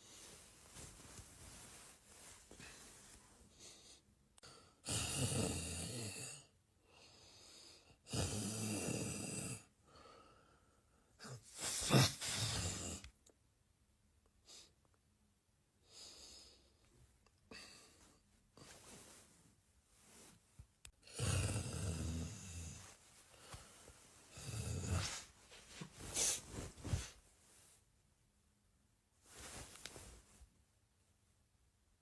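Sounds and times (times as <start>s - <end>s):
person snoring loudly: 4.8s - 6.5s, 8.1s - 9.7s, 21.0s - 22.8s, 24.3s - 25.2s.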